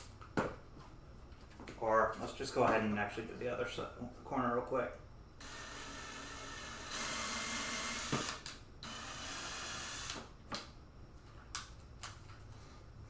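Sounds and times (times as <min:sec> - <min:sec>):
power drill drilling: 0:05.4 - 0:10.2.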